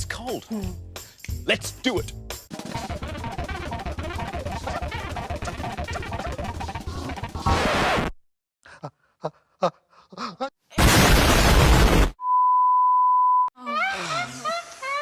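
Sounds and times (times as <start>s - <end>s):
steady high beep tone: 12.2s - 13.5s.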